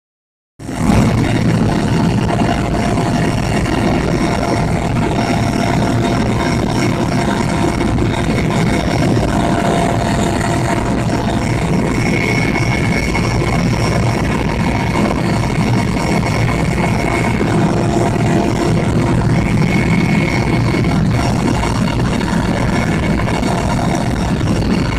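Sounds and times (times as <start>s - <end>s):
helicopter engine and rotor noise: 0.6s - 24.9s
thin even whine: 0.6s - 24.9s.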